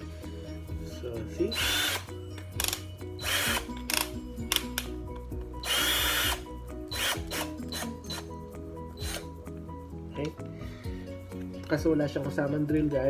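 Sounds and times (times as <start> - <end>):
cordless drill motor whirring: 1.5 - 4.9, 5.6 - 8.3, 9.0 - 9.3.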